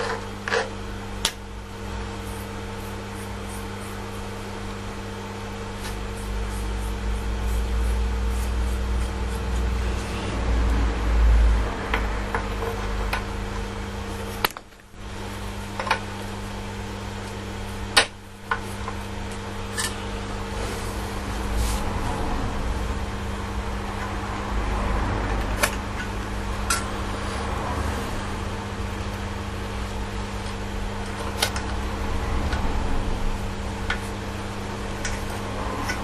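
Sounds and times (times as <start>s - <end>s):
electrical hum: 0.0s - 36.0s
low rumble: 20.1s - 29.9s, 31.6s - 34.4s.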